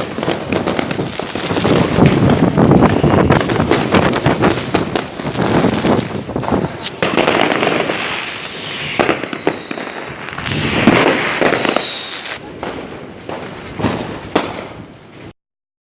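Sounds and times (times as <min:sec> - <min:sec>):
fireworks bangs and crackling pops: 0:00.0 - 0:15.3
firework whistle falling in pitch: 0:07.4 - 0:12.4.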